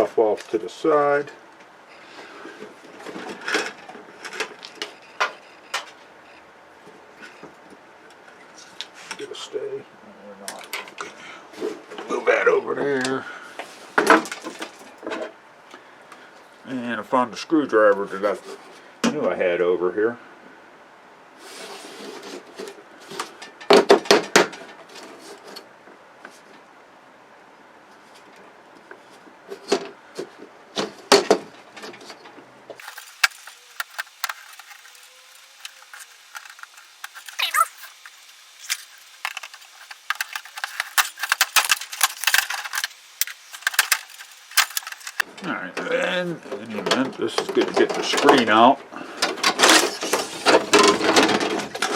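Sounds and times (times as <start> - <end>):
clicks and rattles of parts: 2.6 - 6.0, 29.5 - 45.2, 49.2 - 51.9.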